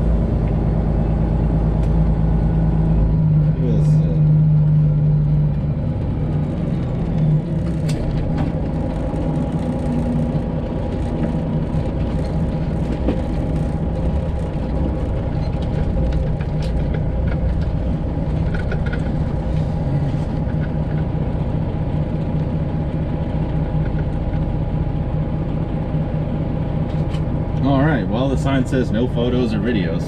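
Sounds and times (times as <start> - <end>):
truck engine running: 0.0 - 30.0.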